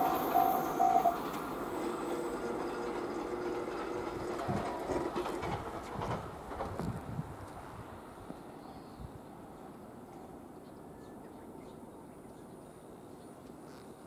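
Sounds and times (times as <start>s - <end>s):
level crossing warning bell: 0.0s - 2.6s
train running past: 0.0s - 13.2s.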